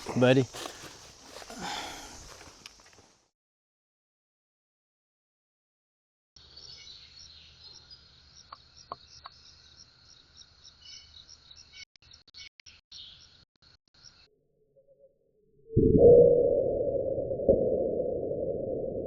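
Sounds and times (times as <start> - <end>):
insects chirping: 0.0 - 3.3, 6.4 - 12.2.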